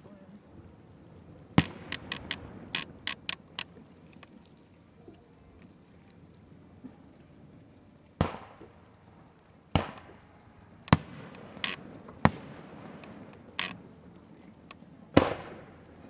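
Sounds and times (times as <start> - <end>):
fireworks shells bursting: 1.6 - 3.6, 10.9 - 13.8.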